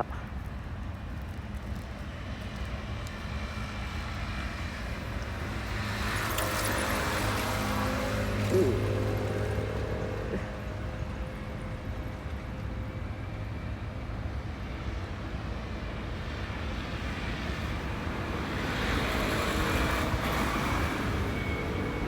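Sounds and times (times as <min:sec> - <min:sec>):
road traffic rumble: 0:00.0 - 0:22.0
vehicle passing: 0:04.4 - 0:12.2.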